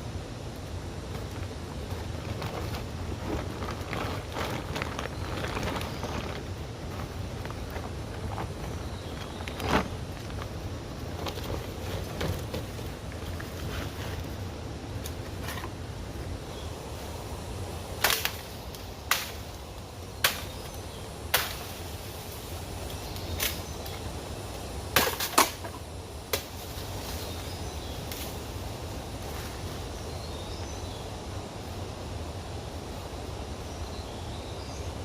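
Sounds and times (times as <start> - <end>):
low background noise: 0.0 - 35.0
sharp cracks or knocks: 18.0 - 18.5.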